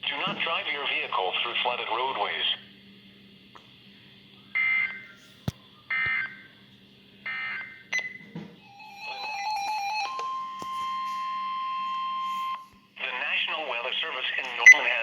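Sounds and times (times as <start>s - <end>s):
warbling data tone bursts: 8.6s - 12.7s.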